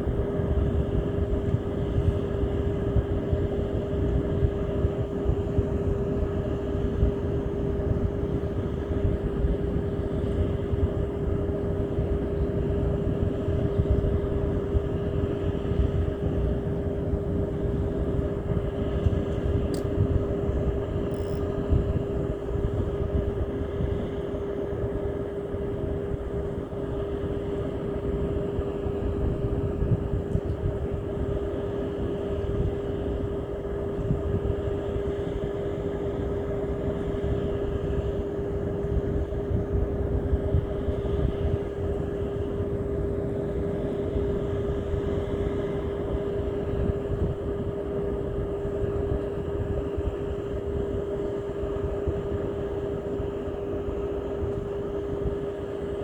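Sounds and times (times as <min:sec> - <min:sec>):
engine running steadily: 0:00.0 - 0:56.0.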